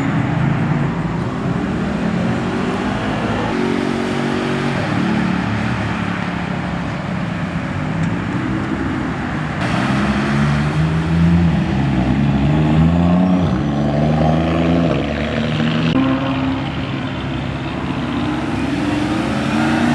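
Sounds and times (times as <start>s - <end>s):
car engine accelerating: 9.6s - 19.9s.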